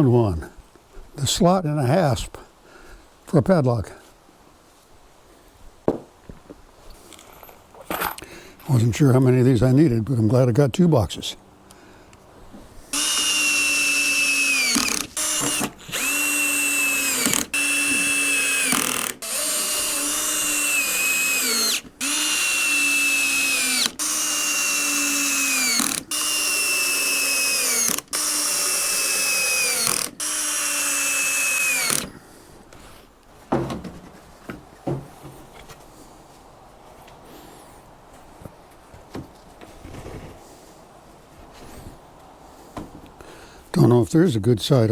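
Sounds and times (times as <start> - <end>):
cordless drill driving screws: 12.9 - 32.1.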